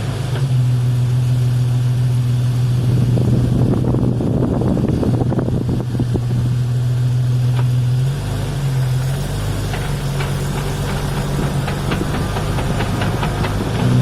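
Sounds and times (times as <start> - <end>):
vehicle engine hum: 0.0 - 14.0
drivetrain clunking: 9.0 - 14.0.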